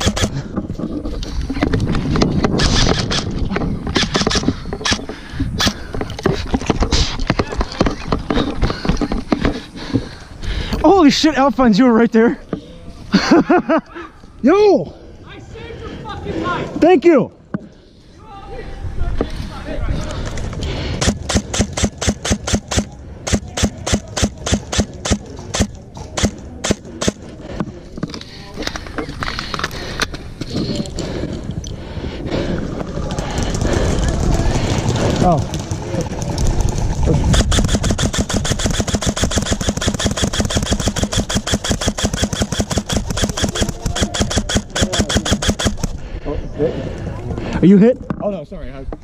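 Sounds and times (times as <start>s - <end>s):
airsoft gun shots: 0.0s - 0.4s, 21.0s - 27.2s, 37.3s - 45.9s.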